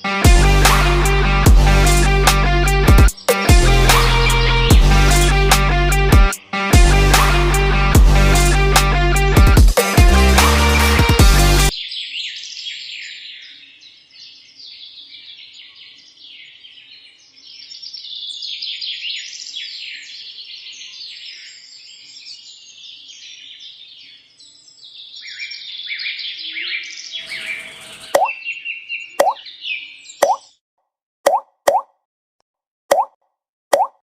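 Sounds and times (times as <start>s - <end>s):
music: 0.0s - 11.7s
small birds chirping: 11.7s - 30.6s.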